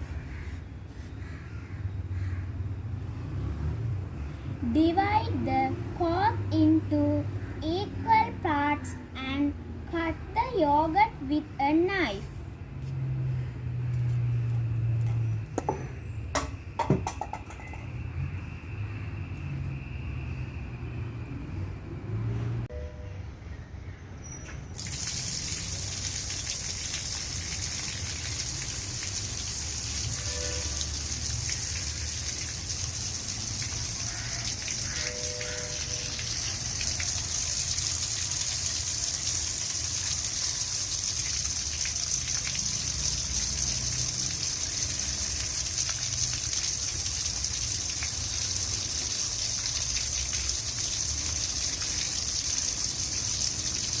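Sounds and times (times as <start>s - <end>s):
tap water gushing onto turbine: 24.8s - 54.0s.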